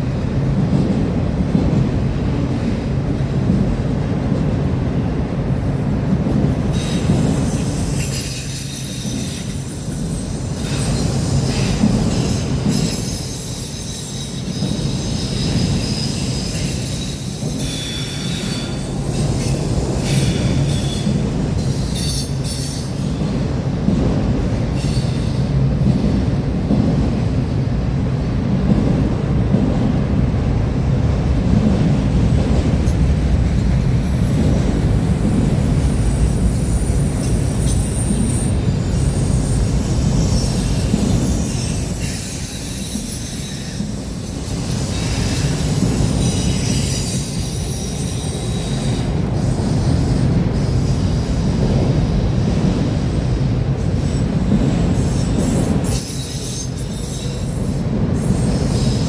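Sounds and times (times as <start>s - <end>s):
freight train wheels rumbling on rails: 0.0s - 59.0s
high-pitched wheel squeals: 6.8s - 23.1s, 36.4s - 49.2s, 55.0s - 59.0s.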